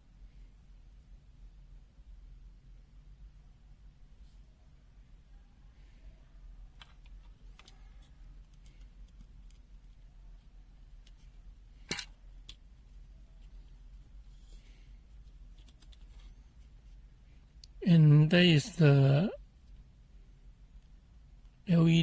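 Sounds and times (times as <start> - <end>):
plastic parts clicking: 6.8 - 9.7, 11.9 - 12.6, 15.5 - 16.3.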